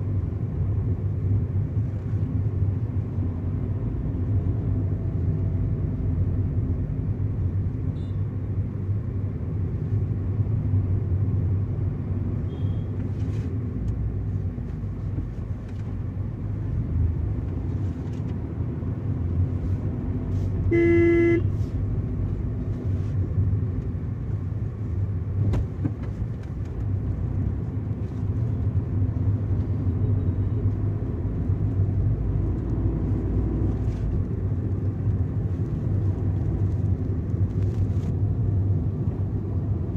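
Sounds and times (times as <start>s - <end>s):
car engine and road drone: 0.0s - 39.9s
vehicle horn honk: 20.7s - 21.6s.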